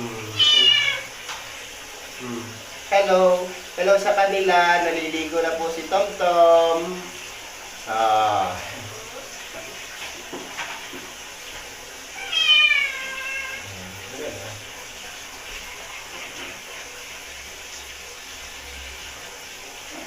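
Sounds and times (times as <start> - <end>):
cat meowing: 0.2 - 1.2, 12.2 - 13.8.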